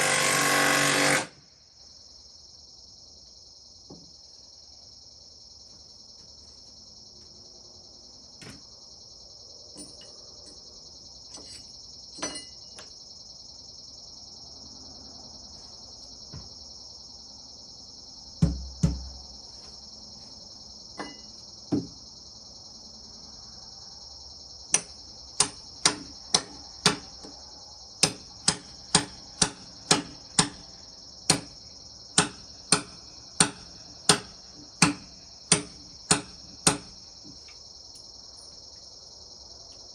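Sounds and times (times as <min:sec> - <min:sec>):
crickets and insects chirring: 0:00.0 - 0:39.9
scattered knocks: 0:18.4 - 0:19.1.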